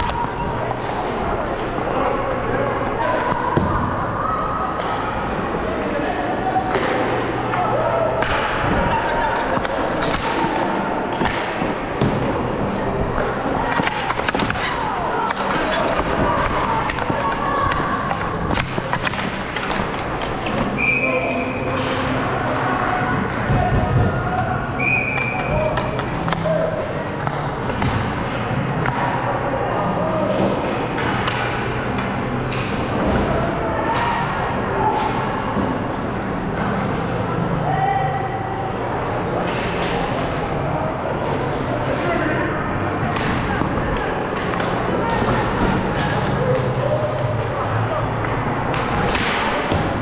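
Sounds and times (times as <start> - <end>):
faint voices: 0.0 - 50.0
sticks and ball clacking: 9.5 - 28.1, 43.0 - 50.0.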